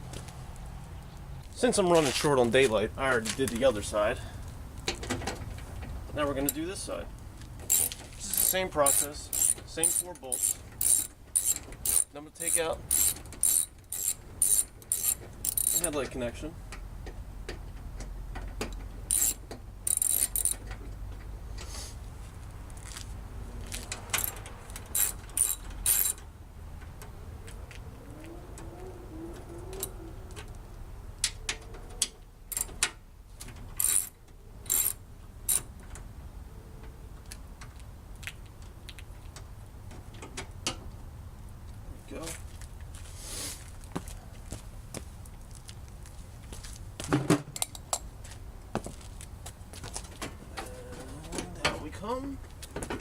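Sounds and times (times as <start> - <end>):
socket ratchet clicking: 7.7 - 15.9, 19.1 - 20.6, 24.2 - 26.2, 34.7 - 35.7.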